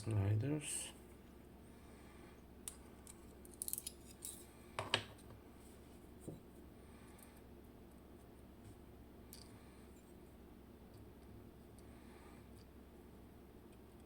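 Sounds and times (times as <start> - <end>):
metal lock parts clicking: 3.1 - 4.4.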